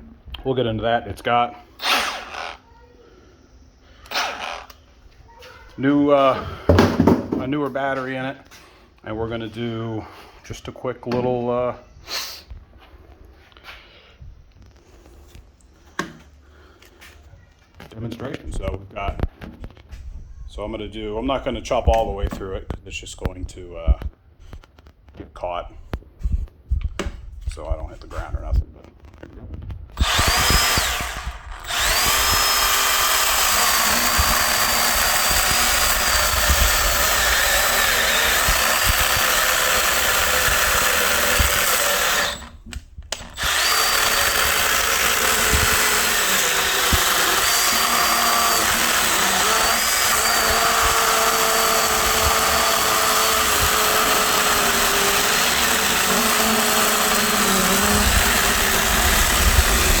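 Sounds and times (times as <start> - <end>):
chainsaw cutting wood: 1.8 - 2.6, 4.1 - 4.8, 30.0 - 60.0.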